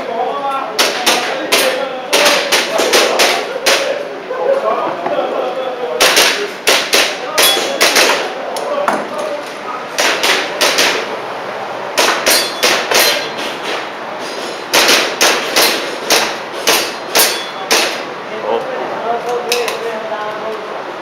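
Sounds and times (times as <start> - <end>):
airsoft pistol shots: 6.0 - 8.3, 10.0 - 11.0, 12.0 - 13.3, 14.7 - 18.0.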